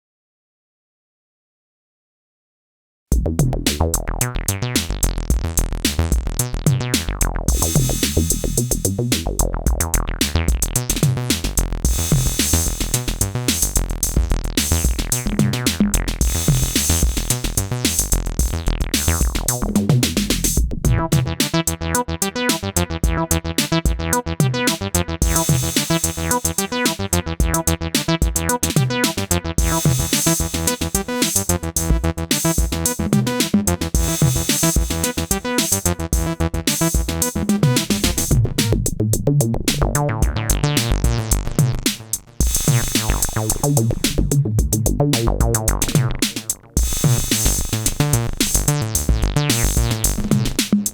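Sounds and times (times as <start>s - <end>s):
acid synthesizer bass line: 3.1s - 50.9s
drum machine beat: 3.1s - 50.9s.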